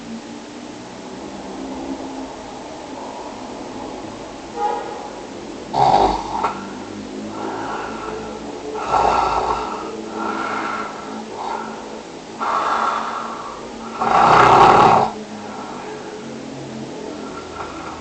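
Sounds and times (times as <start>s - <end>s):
person snoring: 5.7s - 16.0s.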